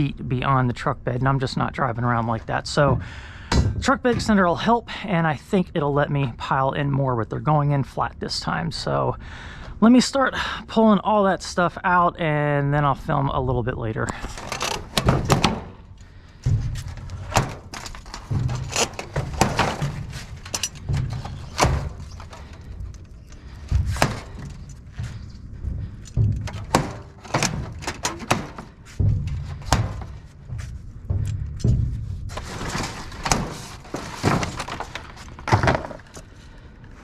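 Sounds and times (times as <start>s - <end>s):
door sections dropped in dumpster: 14.1s - 36.6s.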